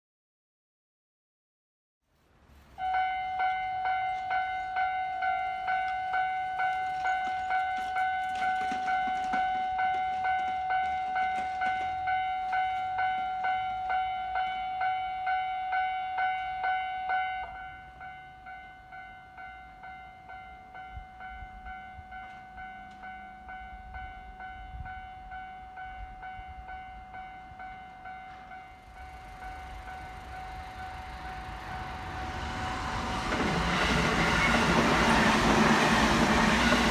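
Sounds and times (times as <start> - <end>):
approaching train: 2.3 - 36.9
electronic level crossing bell: 2.8 - 32.0.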